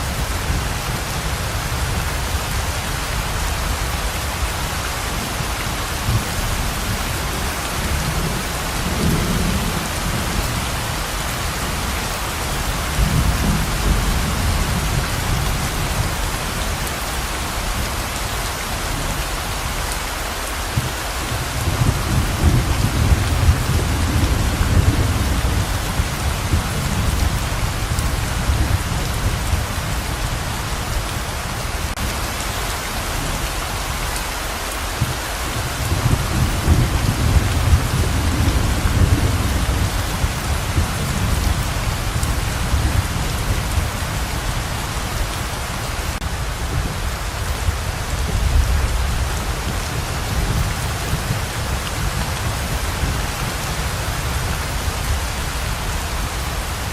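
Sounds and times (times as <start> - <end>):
heavy rain pouring: 0.0 - 56.9
low rolling thunder: 5.1 - 16.9, 20.7 - 31.2, 35.0 - 45.3.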